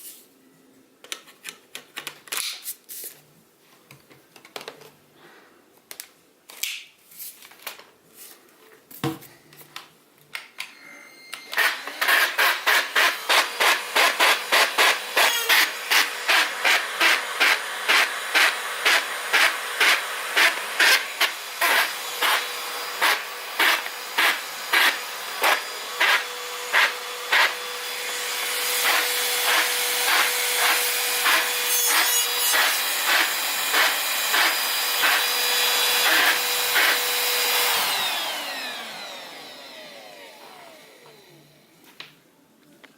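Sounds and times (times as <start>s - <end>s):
vacuum cleaner motor hum: 11.4s - 41.8s.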